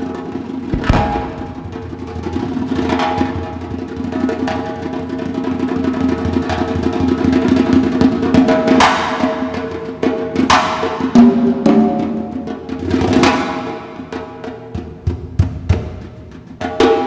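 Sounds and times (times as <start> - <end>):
rapid dense drumming: 0.6 - 3.0.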